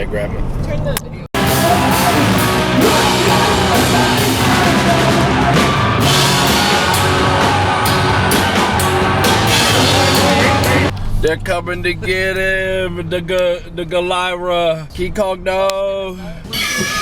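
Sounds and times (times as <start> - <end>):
loud rock music: 1.4 - 10.9
pounding drum kit: 1.4 - 10.9.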